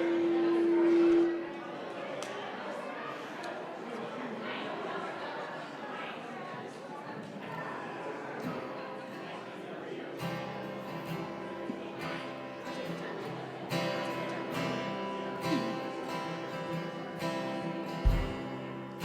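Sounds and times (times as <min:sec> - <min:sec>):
acoustic guitar strumming chords: 0:10.2 - 0:19.0.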